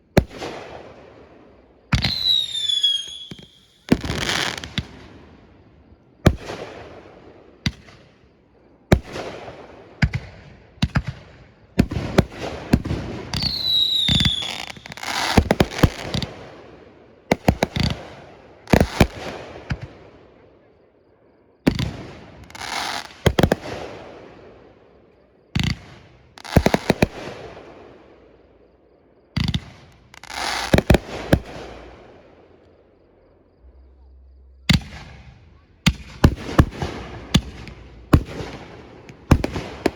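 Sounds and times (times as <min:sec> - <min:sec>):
falling firework whistle: 0:02.0 - 0:04.9, 0:13.3 - 0:15.6.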